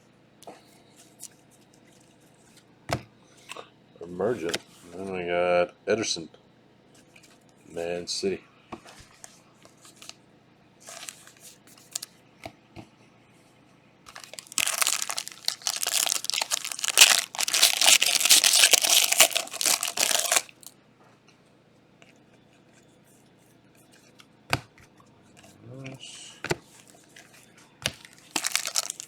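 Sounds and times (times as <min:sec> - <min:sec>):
plastic wrappers crinkling: 0:10.9 - 0:12.1, 0:14.1 - 0:20.7, 0:28.0 - 0:29.0.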